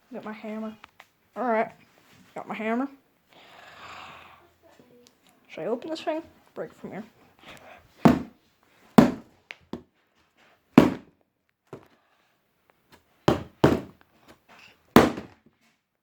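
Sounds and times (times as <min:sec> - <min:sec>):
hammer striking cardboard box: 0:08.1 - 0:08.3, 0:09.0 - 0:09.3, 0:10.8 - 0:11.1, 0:13.3 - 0:14.0, 0:15.0 - 0:15.4.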